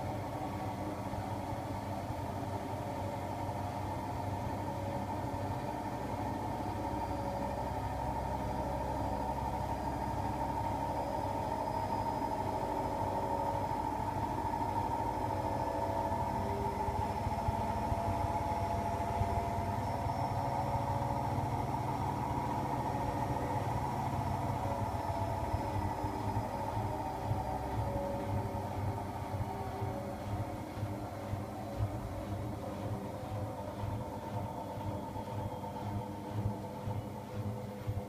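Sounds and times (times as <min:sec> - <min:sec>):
steady tones: 0:00.0 - 0:38.0
washing machine motor whine: 0:00.0 - 0:38.0
low drum hum: 0:11.8 - 0:38.0.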